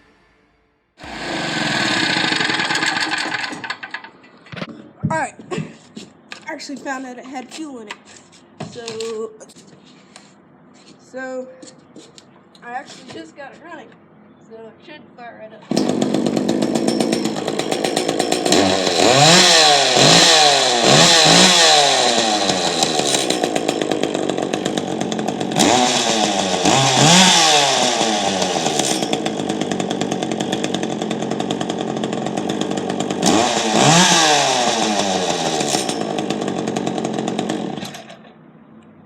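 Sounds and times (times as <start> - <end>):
chainsaw engine idling and revving: 1.0 - 4.2, 15.7 - 38.3.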